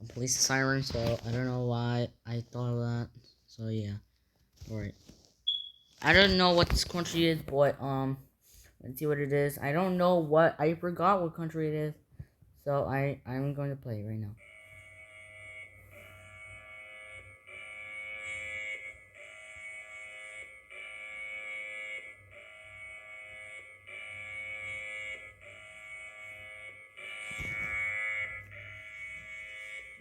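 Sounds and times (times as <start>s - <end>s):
harsh buzzing alarm tone: 14.4s - 30.0s.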